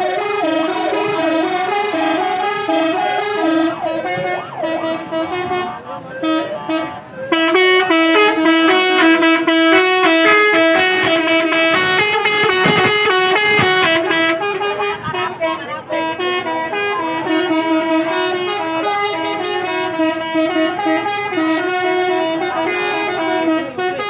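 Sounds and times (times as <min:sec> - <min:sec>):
bus horn playing melody: 0:00.0 - 0:24.0.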